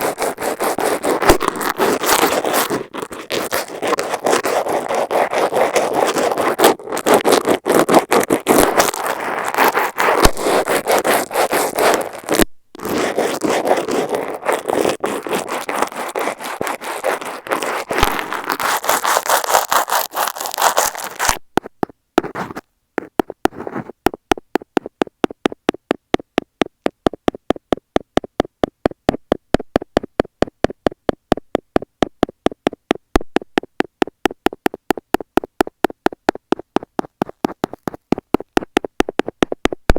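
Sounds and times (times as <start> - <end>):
brush bristles scraping microphone: 0.0 - 39.9
metal pick tapping microphone: 21.0 - 39.9.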